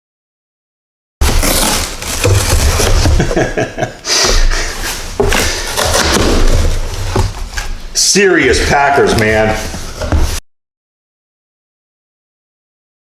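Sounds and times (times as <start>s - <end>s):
cardboard rubbing and scraping: 1.2s - 10.4s
knocks and thumps: 2.0s - 7.9s.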